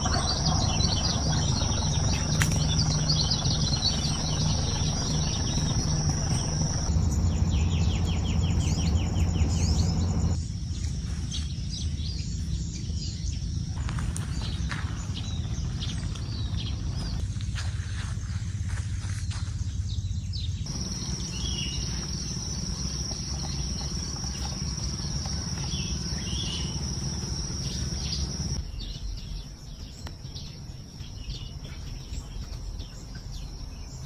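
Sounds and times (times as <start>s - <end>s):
high-pitched insect trill: 0.0s - 10.4s, 20.7s - 28.6s
bird chirps: 0.0s - 17.2s, 19.0s - 34.0s
low rumble: 0.0s - 34.0s.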